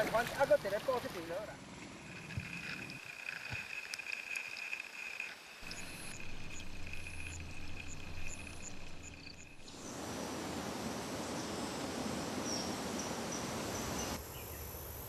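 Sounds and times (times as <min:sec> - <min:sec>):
low hum: 0:01.6 - 0:10.1
high insect buzz: 0:01.8 - 0:15.0.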